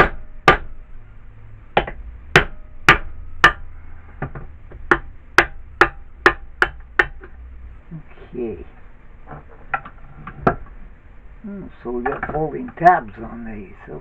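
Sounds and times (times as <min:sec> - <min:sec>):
hammer tapping on metal: 0:00.0 - 0:00.7, 0:01.8 - 0:07.4.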